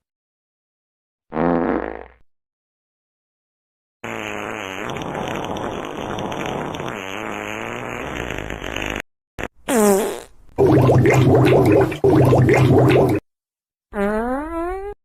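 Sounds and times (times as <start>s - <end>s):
long wavering fart: 1.3s - 2.2s, 4.0s - 13.2s, 13.9s - 15.0s
short sliding-pitch fart: 1.3s - 2.2s, 4.0s - 13.2s, 13.9s - 15.0s.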